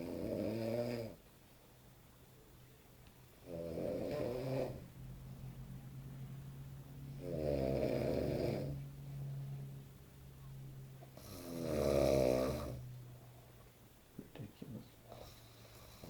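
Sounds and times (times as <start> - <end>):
man snoring loudly: 0.0 - 1.2, 3.4 - 4.8, 7.2 - 8.8, 11.2 - 12.8
steady low hum: 0.0 - 16.0.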